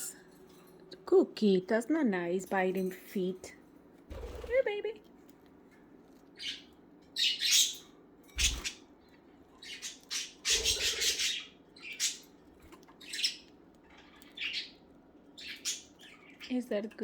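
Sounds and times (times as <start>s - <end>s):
budgies squawking and chattering: 6.4s - 8.9s, 9.6s - 14.8s, 15.4s - 16.7s.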